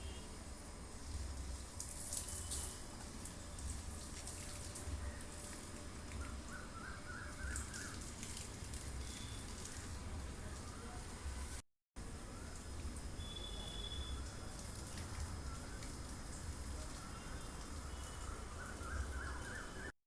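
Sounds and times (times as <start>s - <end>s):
running water hissing: 0.9s - 10.5s.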